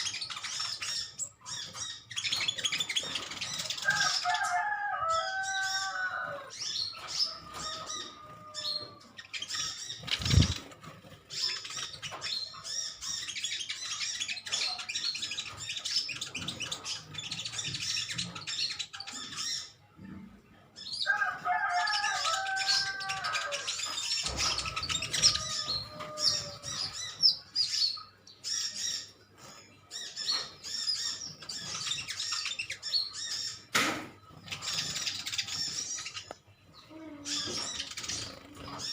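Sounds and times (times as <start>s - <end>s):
wing flutters: 10.0s - 11.8s.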